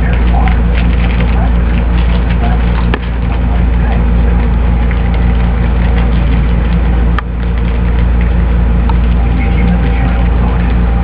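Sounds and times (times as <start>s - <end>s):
low hum with buzzing overtone: 0.0s - 11.0s.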